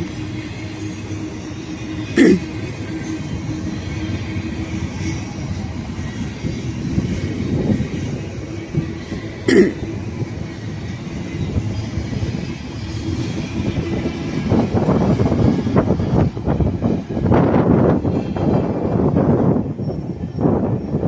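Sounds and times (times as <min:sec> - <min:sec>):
freight train wheels rumbling: 0:00.0 - 0:21.0.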